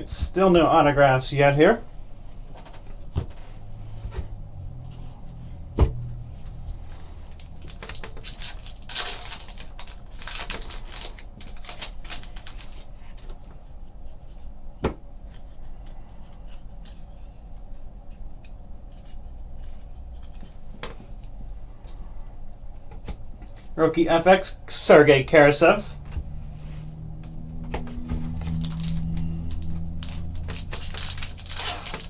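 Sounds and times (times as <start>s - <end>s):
cards and wrappers rustling: 4.9s - 13.6s, 24.7s - 32.0s.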